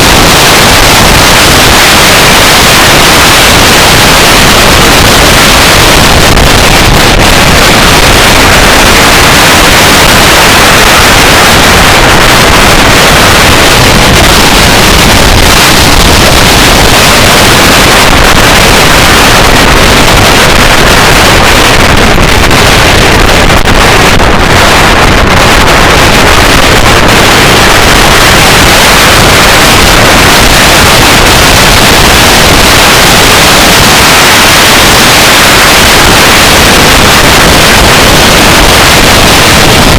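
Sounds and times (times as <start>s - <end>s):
wind rushing past moving car: 2.9s - 28.4s.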